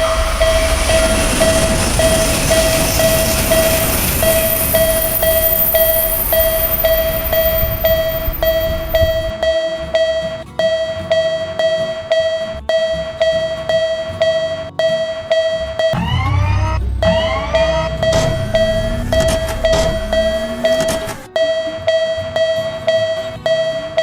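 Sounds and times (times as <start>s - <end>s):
passing train rumbling: 0.0s - 9.4s, 16.0s - 21.3s
railroad crossing bell ringing: 0.0s - 24.0s.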